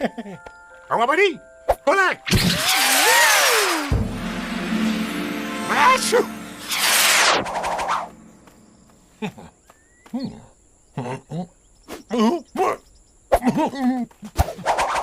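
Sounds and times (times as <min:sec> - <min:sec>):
cartoon character vocal noises: 0:10.1 - 0:12.8.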